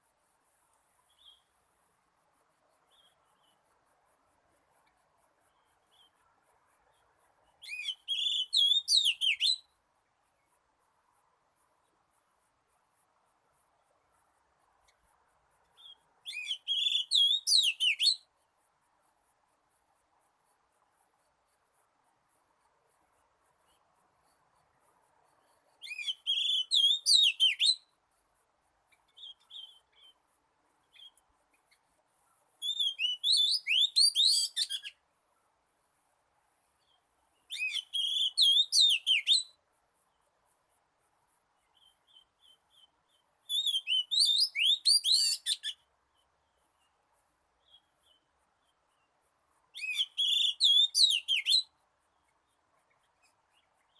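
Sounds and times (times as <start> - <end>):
bird whistled song: 7.6 - 9.8, 15.8 - 18.3, 25.8 - 27.9, 29.1 - 30.2, 32.6 - 35.0, 37.5 - 39.6, 41.8 - 45.8, 49.8 - 51.8.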